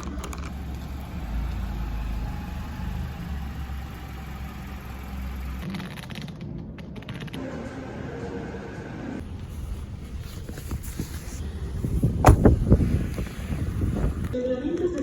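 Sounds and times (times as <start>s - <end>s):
vehicle running low rumble: 0.0s - 5.7s, 9.2s - 14.4s.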